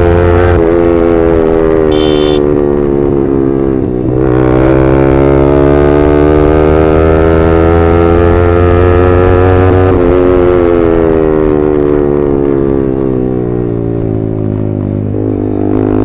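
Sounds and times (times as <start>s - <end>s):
motorcycle engine exhaust note: 1.7s - 2.7s.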